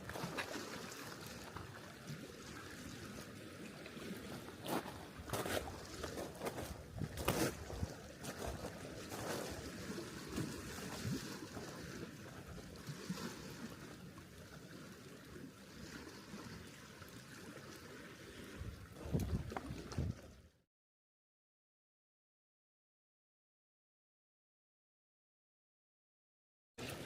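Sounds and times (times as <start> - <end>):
water splashing and lapping: 0.0 - 20.6, 26.8 - 27.0.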